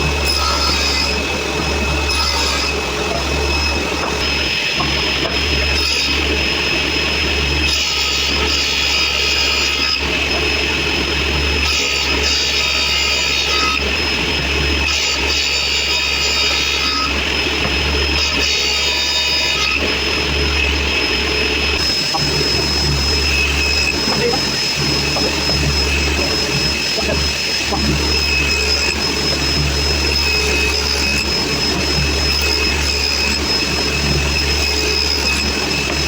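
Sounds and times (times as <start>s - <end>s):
table saw motor humming: 0.0s - 36.0s
saw blade cutting wood: 21.8s - 36.0s.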